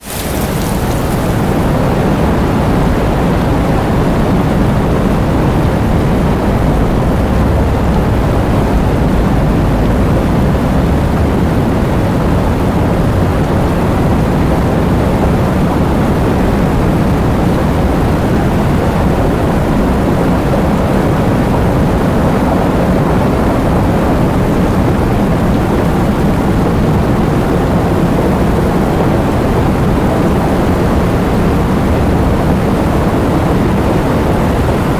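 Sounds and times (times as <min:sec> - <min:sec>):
heavy rain: 0:00.0 - 0:34.9.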